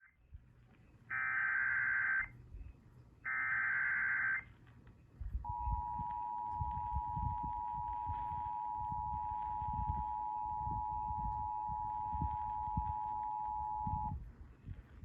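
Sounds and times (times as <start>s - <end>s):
two-tone alert signal: 5.5s - 14.1s.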